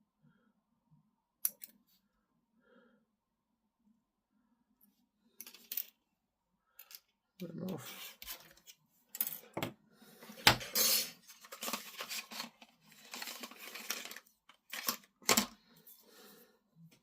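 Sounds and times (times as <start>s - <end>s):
scraping and rustling: 10.2s - 16.1s
plastic parts clicking and knocking: 11.5s - 15.6s.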